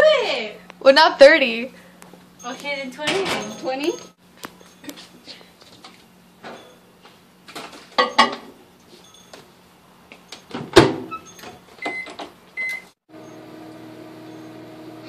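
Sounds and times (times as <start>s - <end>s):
keypad beeps: 11.1s - 12.9s
microwave oven humming: 11.9s - 15.0s.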